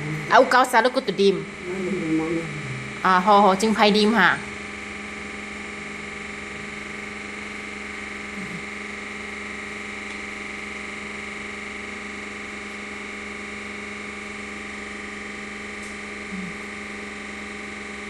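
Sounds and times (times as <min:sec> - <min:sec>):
hum of fixed tones: 0:00.0 - 0:18.0.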